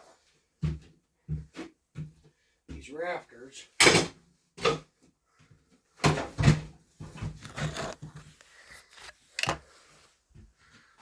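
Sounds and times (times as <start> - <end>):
objects knocking and rustling: 3.8 - 10.9.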